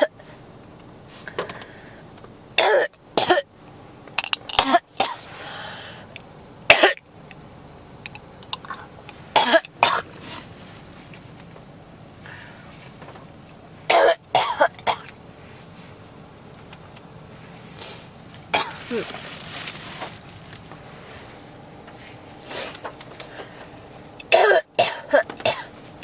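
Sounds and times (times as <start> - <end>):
soft breath sounds: 0.2 - 2.2, 5.2 - 6.2, 12.2 - 13.0, 17.3 - 18.2, 20.8 - 23.8
person coughing: 2.6 - 3.4, 13.9 - 15.1, 18.5 - 19.2, 24.3 - 25.8.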